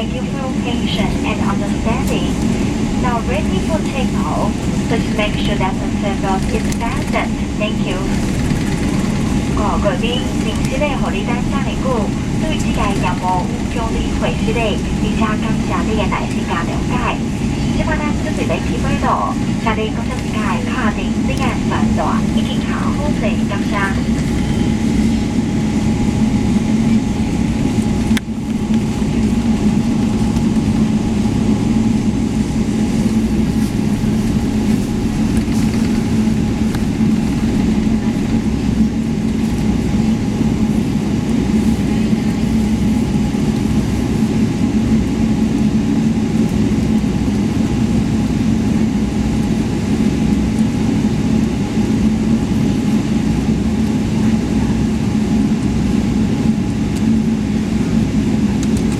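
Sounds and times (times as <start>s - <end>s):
airplane cabin engine hum: 0.0s - 58.9s.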